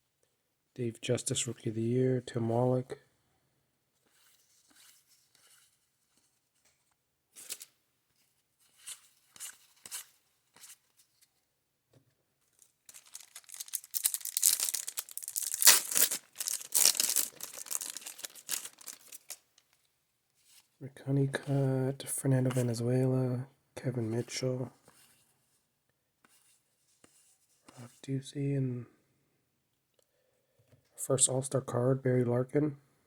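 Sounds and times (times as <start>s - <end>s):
card pack wrapper tearing: 12.6s - 19.4s.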